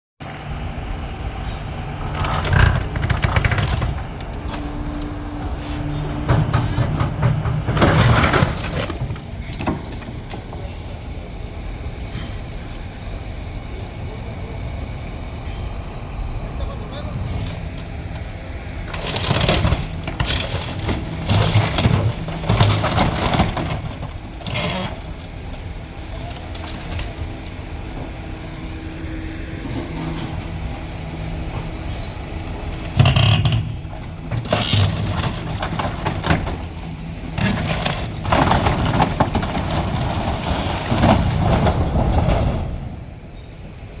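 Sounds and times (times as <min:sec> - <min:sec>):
engine running steadily: 0:00.2 - 0:44.0
material crushing and cracking: 0:02.0 - 0:04.6, 0:18.9 - 0:25.2.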